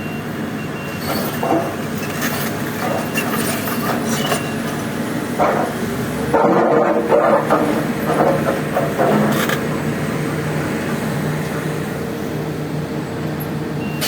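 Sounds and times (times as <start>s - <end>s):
excavator diesel engine running: 0.0s - 14.0s
machine clanks and knocks: 0.9s - 4.8s, 5.4s - 9.7s.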